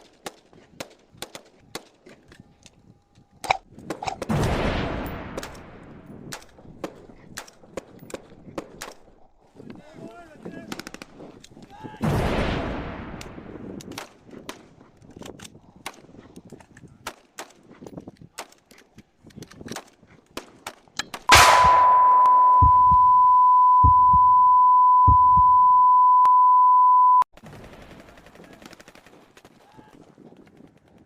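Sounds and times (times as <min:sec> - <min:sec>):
low thumps: 0:21.3 - 0:26.0
steady high beep: 0:21.3 - 0:27.2.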